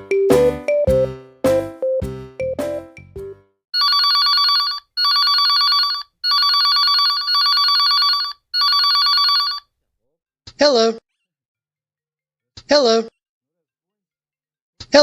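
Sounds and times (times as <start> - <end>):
telephone trilling rings: 3.8 - 9.6.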